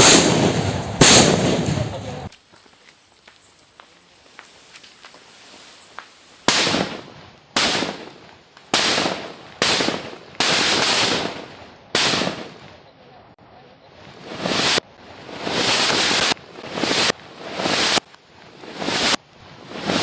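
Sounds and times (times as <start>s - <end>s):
firecracker bursts with hissing tail: 0.0s - 12.8s, 14.0s - 20.0s
faint crackling firecrackers: 0.0s - 20.0s.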